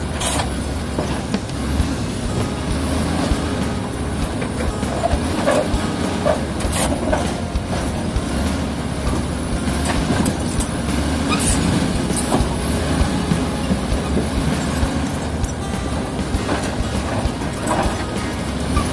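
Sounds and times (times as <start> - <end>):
diesel engine under load: 0.0 - 18.9
steel tracks clanking and squeaking: 0.0 - 18.9.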